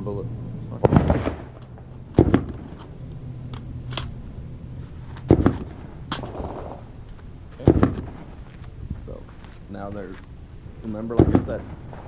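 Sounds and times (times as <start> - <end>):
firearm heavy thump: 0.8 - 2.8, 5.2 - 6.8, 7.6 - 8.3, 11.0 - 12.0.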